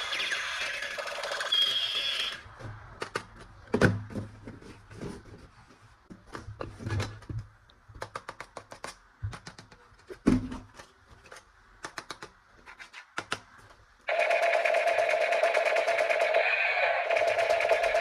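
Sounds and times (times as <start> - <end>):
plastic toy parts clicking: 10.8 - 12.4.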